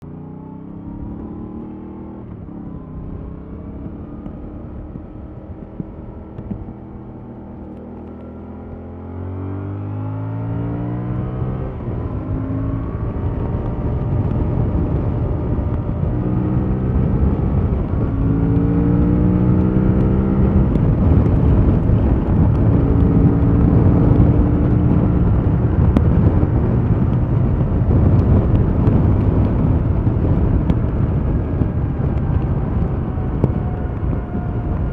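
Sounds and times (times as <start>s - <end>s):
motorcycle engine accelerating: 0.0s - 34.9s.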